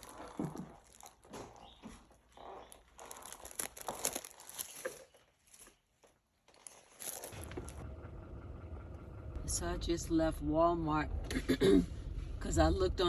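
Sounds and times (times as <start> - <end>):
soft rustling and crinkling: 0.0 - 8.2.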